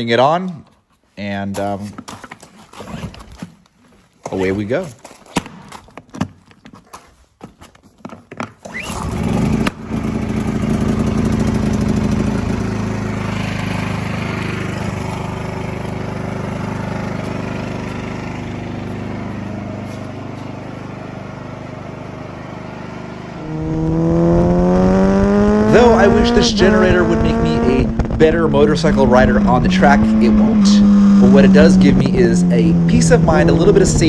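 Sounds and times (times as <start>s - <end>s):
engine starting and running: 8.6s - 34.0s.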